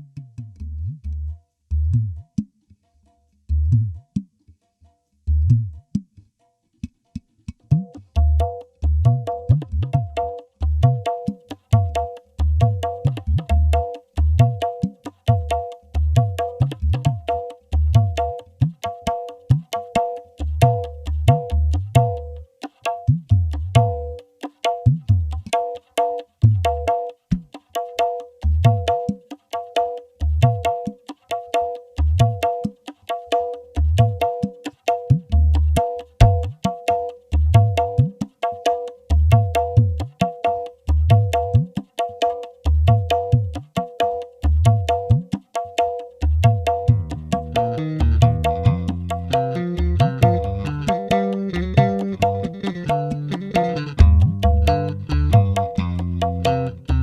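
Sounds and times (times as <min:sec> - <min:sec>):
sharp clicking percussion hits: 0:07.5 - 0:57.0
bass guitar notes: 0:46.2 - 0:57.0
plucked melody: 0:46.4 - 0:57.0.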